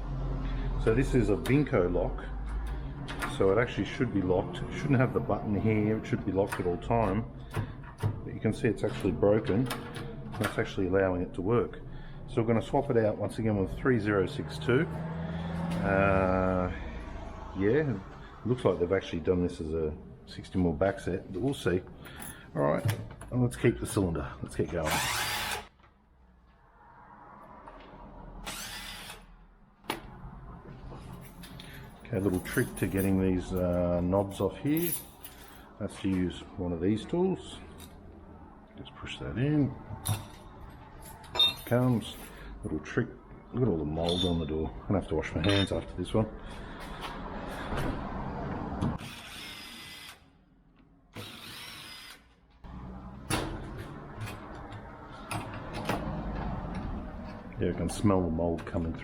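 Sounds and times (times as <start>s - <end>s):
cordless drill running: 24.9s - 25.6s, 51.2s - 52.2s
cordless drill burst: 24.9s - 25.7s, 28.5s - 29.3s, 49.0s - 50.2s, 51.2s - 52.3s.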